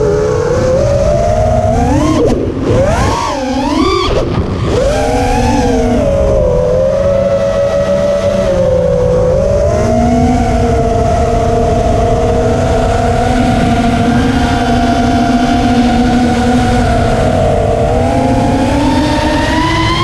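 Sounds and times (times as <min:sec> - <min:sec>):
drone motors whining: 0:00.0 - 0:20.0
heavy low rumble: 0:03.8 - 0:19.4.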